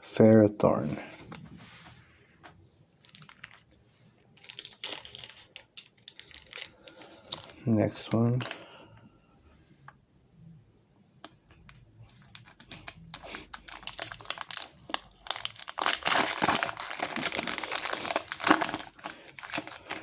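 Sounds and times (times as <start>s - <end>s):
foil wrapper tearing and crinkling: 4.4s - 7.5s, 12.2s - 20.0s.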